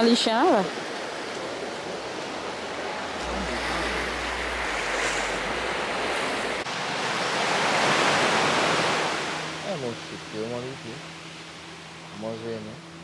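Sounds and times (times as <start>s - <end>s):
ocean surf washing on beach: 0.0s - 12.3s
wind rumble on microphone: 1.2s - 9.2s.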